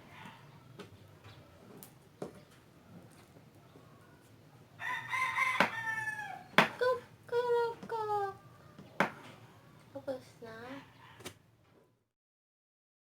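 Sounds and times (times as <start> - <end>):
rooster crowing: 4.8 - 6.5.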